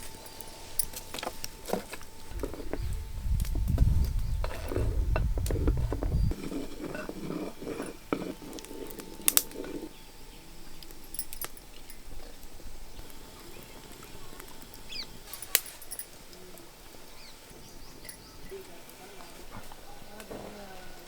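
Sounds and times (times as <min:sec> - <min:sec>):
metallic clinks of cooking utensils: 0:10.8 - 0:12.4, 0:18.0 - 0:18.7
faint bird chirps: 0:13.2 - 0:15.6, 0:17.0 - 0:18.8.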